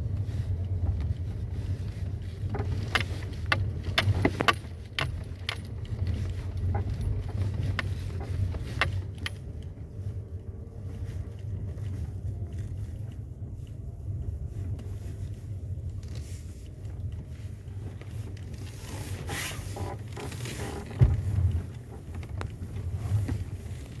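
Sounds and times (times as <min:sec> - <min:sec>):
creaks and knocks over bumps: 0:00.0 - 0:24.0
road rumble inside car: 0:00.0 - 0:24.0.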